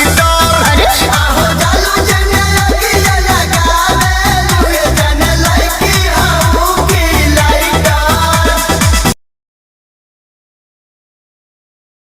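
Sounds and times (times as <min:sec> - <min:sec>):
electronic dance music: 0:00.0 - 0:09.2.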